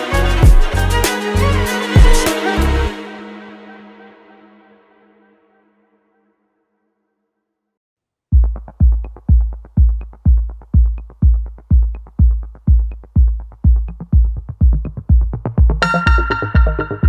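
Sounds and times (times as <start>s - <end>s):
electronic music with kick drum: 0.0s - 2.6s, 8.3s - 17.0s.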